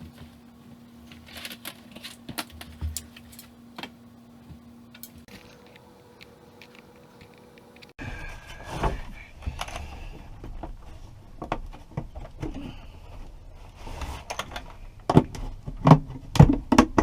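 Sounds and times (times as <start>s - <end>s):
tools and containers clicking and rustling: 1.0s - 3.9s, 4.9s - 8.0s.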